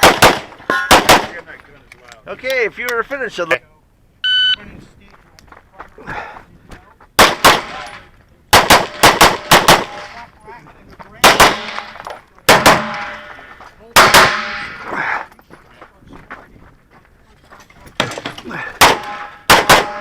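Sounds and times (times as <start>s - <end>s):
pistol shots: 0.0s - 1.4s, 7.2s - 10.1s, 11.2s - 13.4s, 14.0s - 14.8s, 18.8s - 20.0s.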